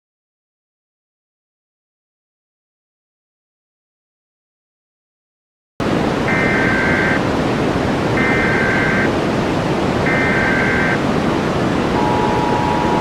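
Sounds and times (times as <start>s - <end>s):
buzzing digital data bursts: 6.3s - 7.2s, 8.2s - 9.1s, 10.1s - 11.0s
two-tone attention signal: 6.3s - 7.2s, 8.2s - 9.1s, 10.1s - 11.0s, 12.0s - 13.0s.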